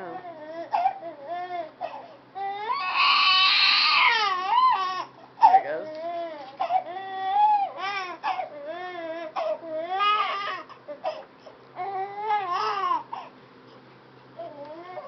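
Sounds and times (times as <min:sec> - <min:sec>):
baby crying: 0:00.0 - 0:11.2, 0:11.8 - 0:13.3, 0:14.4 - 0:15.0.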